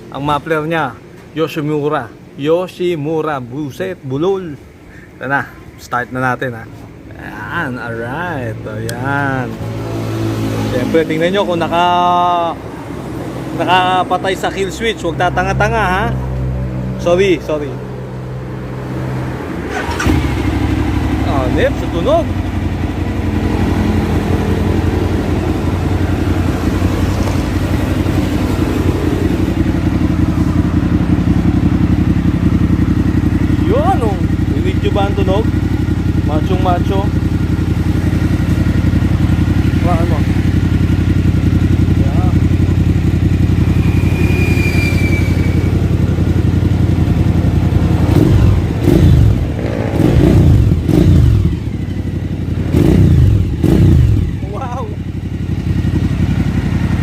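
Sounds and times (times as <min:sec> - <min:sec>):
motorcycle engine idling: 0:19.3 - 0:57.0.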